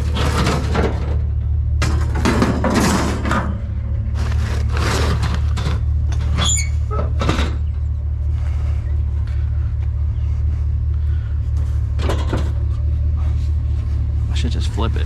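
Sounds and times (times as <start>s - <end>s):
metal scrap clanking: 0.0s - 6.4s
clatter: 0.0s - 6.5s
vehicle engine idling: 3.6s - 15.0s
metallic squeak: 6.1s - 7.7s.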